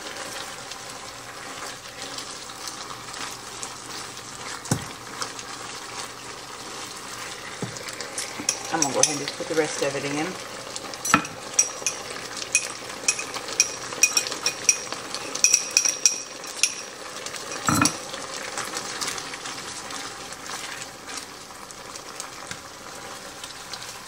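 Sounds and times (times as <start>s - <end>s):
chicken sizzling in skillet: 0.0s - 24.0s
utensil clinking against pan: 8.2s - 9.4s, 11.0s - 18.0s.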